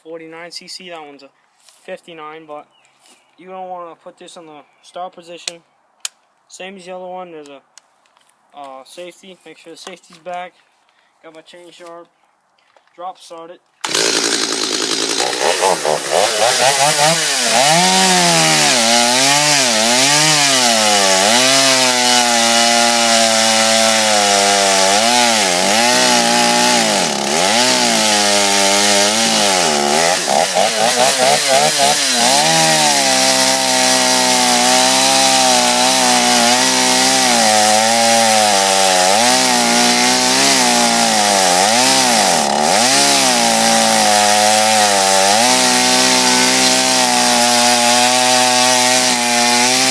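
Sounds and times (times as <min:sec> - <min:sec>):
chainsaw revving and cutting: 0:13.8 - 0:49.9.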